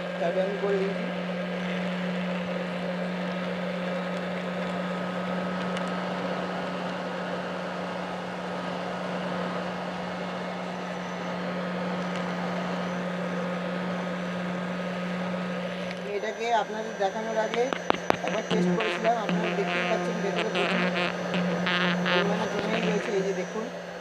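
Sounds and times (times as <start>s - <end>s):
small vacuum cleaner motor humming: 16.7s - 24.0s.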